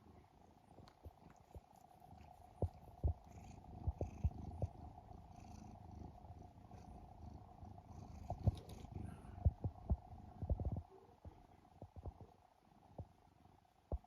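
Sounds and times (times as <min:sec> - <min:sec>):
cat purring: 0:00.0 - 0:14.0.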